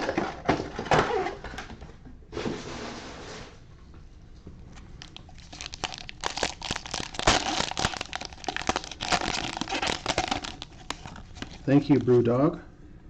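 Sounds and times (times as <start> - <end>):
plastic packaging crinkling: 4.7 - 12.3
plastic packaging tearing: 5.0 - 12.2.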